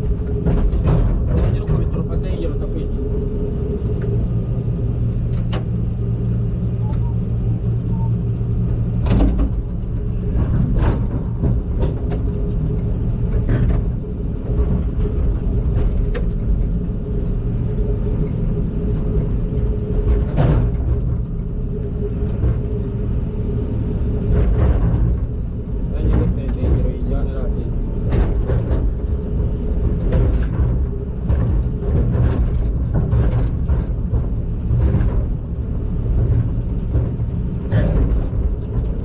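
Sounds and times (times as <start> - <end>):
excavator diesel engine running: 0.0 - 39.0
machine clanking: 24.2 - 39.0.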